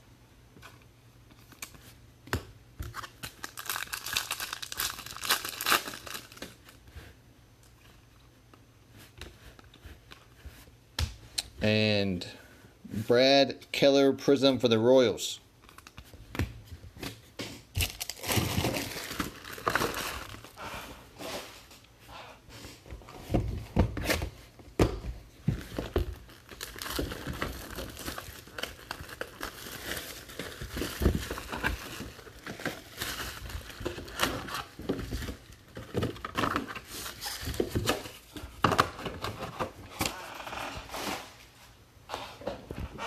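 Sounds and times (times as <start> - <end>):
wrappers tearing and crinkling: 2.9 - 6.8, 17.8 - 20.6, 26.0 - 35.6.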